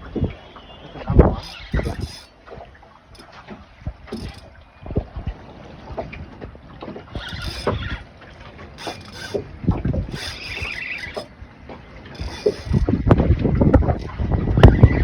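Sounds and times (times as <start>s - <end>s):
water slapping boat hull: 0.0s - 15.0s
wind gusting on microphone: 12.2s - 15.0s.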